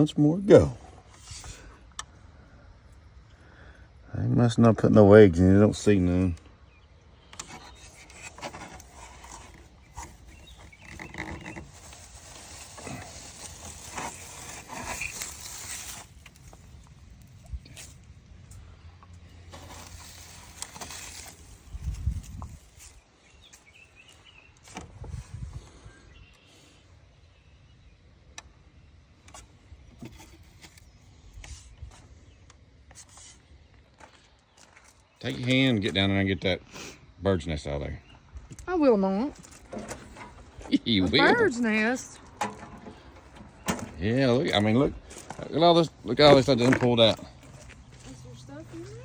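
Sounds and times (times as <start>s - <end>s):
dry leaves and twigs rustling: 7.4s - 25.2s, 39.2s - 49.0s.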